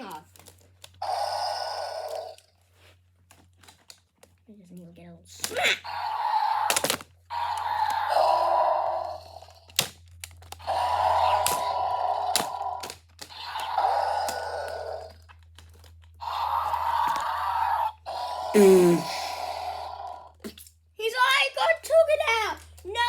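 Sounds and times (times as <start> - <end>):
toy dinosaur roaring: 1.0 - 2.5, 5.4 - 20.4.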